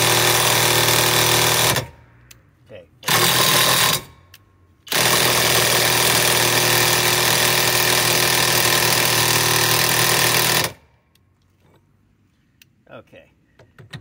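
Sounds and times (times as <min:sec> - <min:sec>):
impact wrench hammering: 0:03.0 - 0:10.8.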